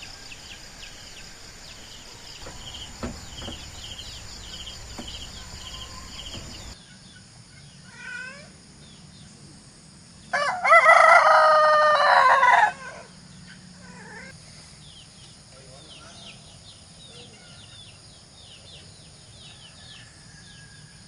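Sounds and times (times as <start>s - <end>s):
faint pulsing chirping: 0.0s - 6.8s
rooster crowing: 0.0s - 6.8s, 10.3s - 13.1s, 19.4s - 21.0s
background noise: 0.0s - 21.0s.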